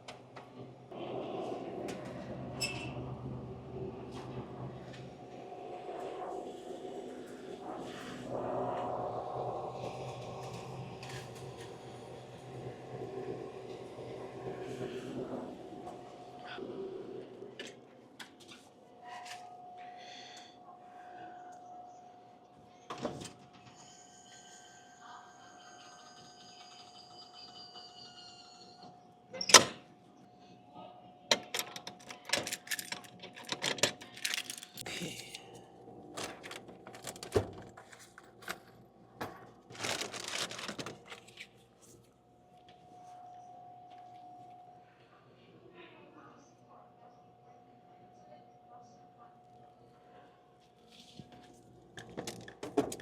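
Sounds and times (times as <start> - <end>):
clicks and rustles of handling: 31.3 - 35.4, 36.2 - 38.7, 39.7 - 41.5
snack packages crinkling: 34.0 - 34.9, 39.7 - 41.3.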